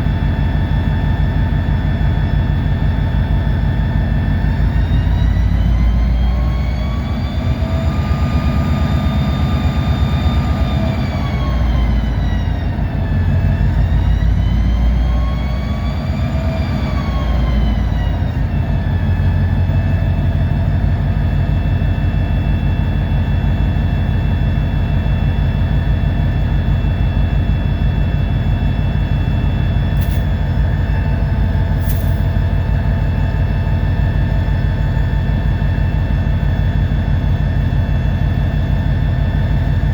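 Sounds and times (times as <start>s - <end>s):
diesel locomotive engine rumble: 0.0s - 39.9s
short clicks: 30.0s - 30.3s, 31.8s - 32.3s.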